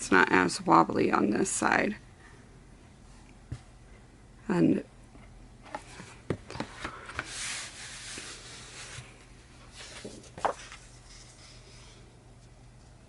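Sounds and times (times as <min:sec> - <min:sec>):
paper crackle: 0:09.8 - 0:11.6.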